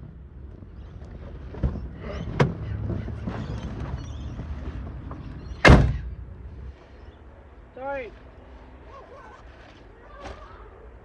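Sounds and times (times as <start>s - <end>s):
low steady rumble: 0.0s - 11.0s
loud short thump: 5.6s - 6.1s.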